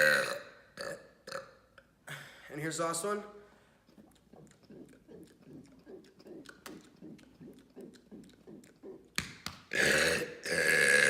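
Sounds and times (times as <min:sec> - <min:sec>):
loud burp: 0:00.0 - 0:01.7, 0:09.7 - 0:11.0
man gulping rhythmically: 0:00.0 - 0:02.2, 0:03.6 - 0:11.0.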